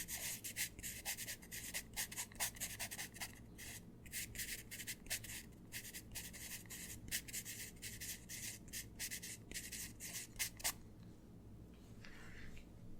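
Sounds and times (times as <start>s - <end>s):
pencil scratching on paper: 0.0s - 10.8s.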